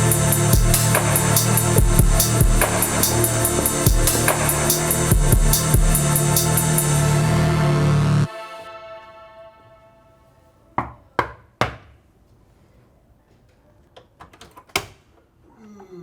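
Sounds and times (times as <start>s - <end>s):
held music chord: 0.0s - 10.7s.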